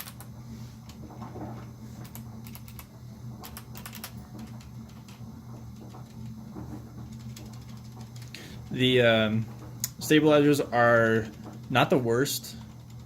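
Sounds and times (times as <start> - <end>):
water heater hum: 0.0 - 13.0
clicky mechanical keyboard typing: 2.1 - 4.6.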